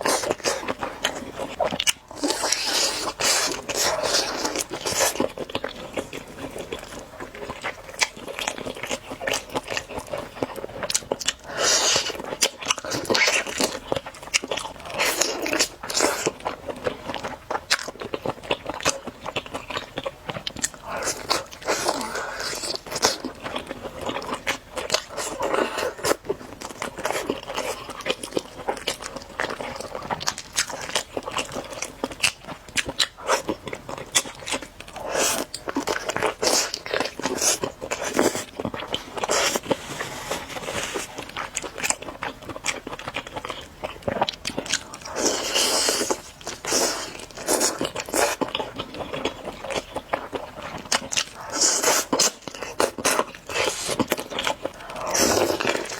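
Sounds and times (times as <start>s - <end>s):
person chewing crunchy chicken: 0.0s - 55.9s.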